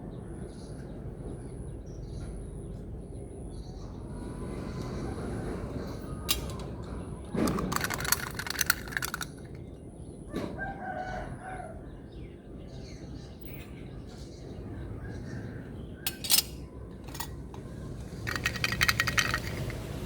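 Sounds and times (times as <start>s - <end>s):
low outdoor hum: 0.0s - 20.0s
plastic beads clattering: 7.5s - 9.5s, 18.2s - 19.9s
rooster crowing: 10.3s - 11.9s.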